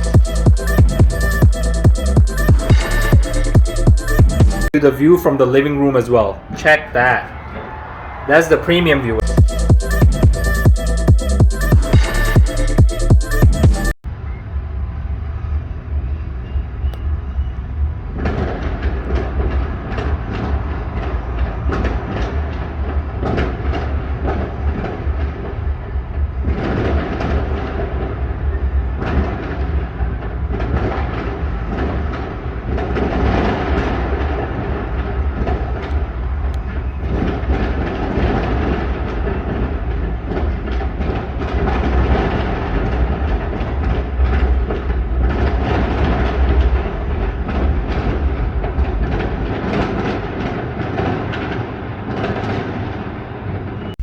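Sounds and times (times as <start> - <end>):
fireworks bangs and crackles: 18.0 - 54.0.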